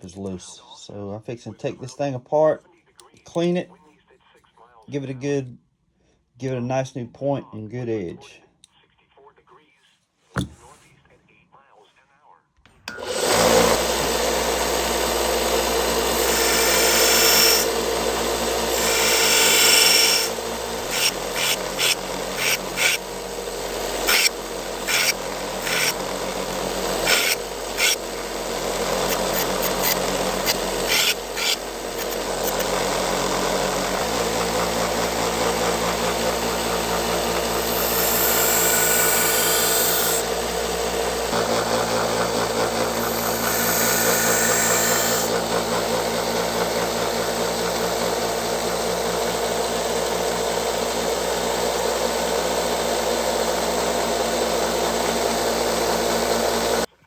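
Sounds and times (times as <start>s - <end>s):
grinder motor hum: 12.9s - 57.0s.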